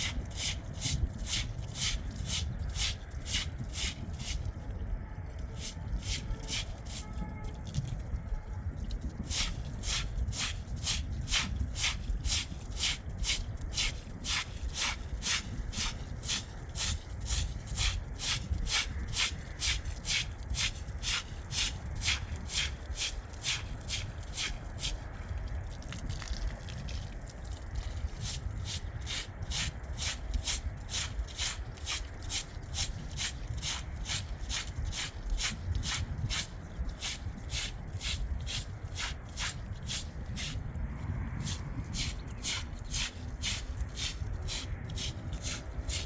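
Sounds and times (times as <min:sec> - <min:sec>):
wood rasping strokes: 0:09.2 - 0:25.0, 0:28.2 - 0:40.6, 0:41.4 - 0:46.0.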